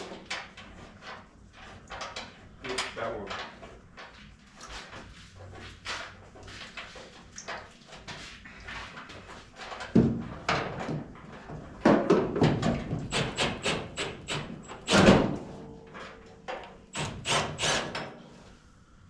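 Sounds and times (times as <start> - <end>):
metal knocks and clanks: 9.6 - 18.2.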